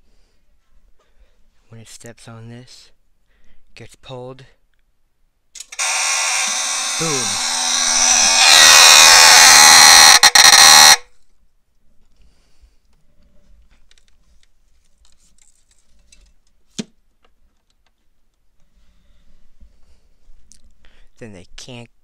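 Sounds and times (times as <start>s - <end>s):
fire alarm shrieking: 5.8s - 11.0s
faint handling noise: 11.8s - 18.8s.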